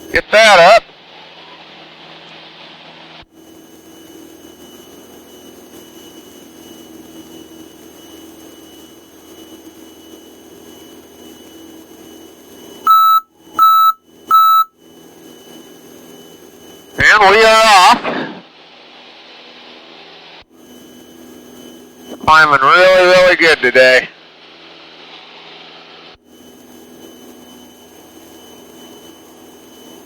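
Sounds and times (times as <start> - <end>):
light aircraft engine drone: 0.0 - 30.0
short electronic beeps: 12.9 - 14.7.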